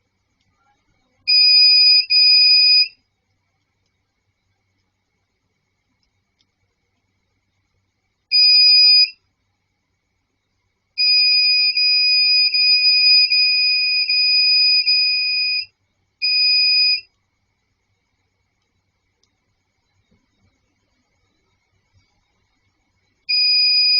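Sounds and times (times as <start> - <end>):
electronic buzzer beeps: 8.3 - 9.1, 23.3 - 23.9.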